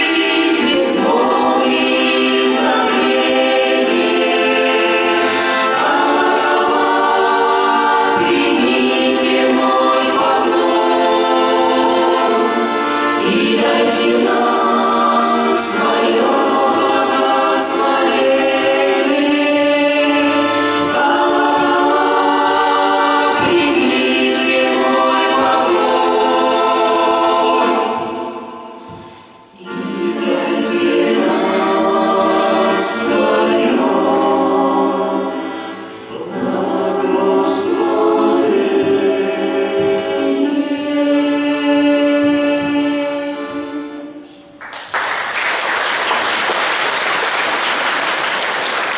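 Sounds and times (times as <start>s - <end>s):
vocal ensemble singing in harmony: 0.0s - 44.6s.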